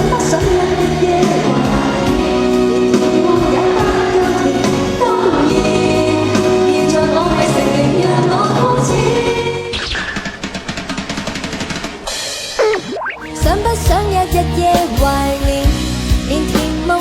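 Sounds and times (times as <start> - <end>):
women singing autotuned vocals: 0.0 - 9.7, 13.2 - 17.0
pop backing band: 0.0 - 17.0.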